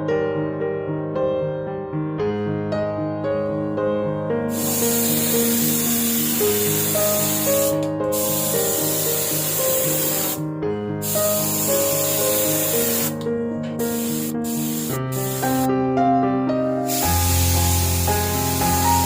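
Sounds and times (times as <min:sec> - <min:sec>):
background music: 0:02.4 - 0:19.0
spray paint hissing: 0:04.5 - 0:10.4, 0:11.0 - 0:15.7, 0:16.9 - 0:19.0.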